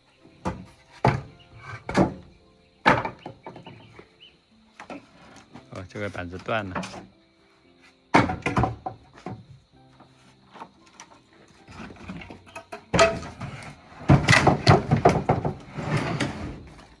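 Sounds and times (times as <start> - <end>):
background music held notes: 0.0 - 17.0
wooden boards knocking and clattering: 0.2 - 4.2, 4.8 - 7.2, 8.1 - 17.0.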